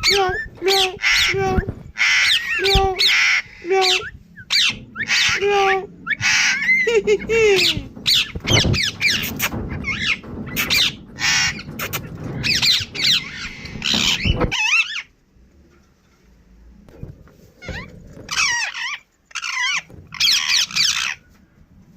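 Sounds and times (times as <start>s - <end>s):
parrot speech-like mimicry: 0.0s - 1.7s, 2.3s - 7.9s
parrot squawking and chattering: 0.0s - 15.1s, 17.6s - 21.2s.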